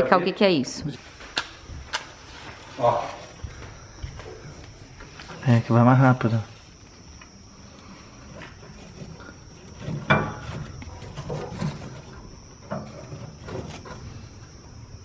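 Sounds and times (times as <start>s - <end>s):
objects knocking and clattering: 8.3s - 14.4s.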